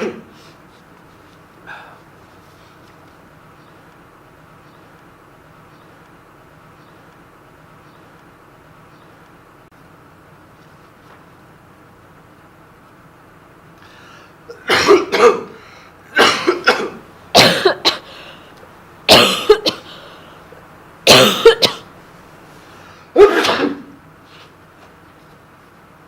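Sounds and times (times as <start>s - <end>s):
person coughing: 0.0s - 0.4s, 14.5s - 18.3s, 19.1s - 20.2s, 21.0s - 21.9s, 23.1s - 24.0s.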